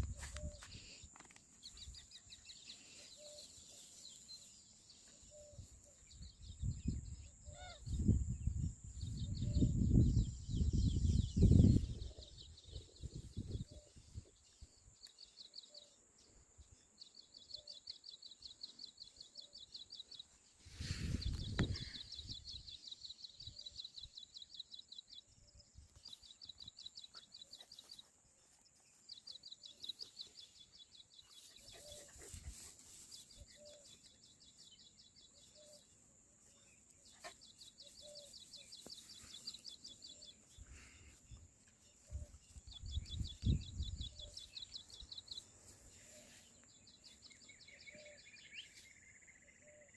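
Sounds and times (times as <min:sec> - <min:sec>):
wind gust on microphone: 0:07.8 - 0:13.8, 0:20.8 - 0:22.6.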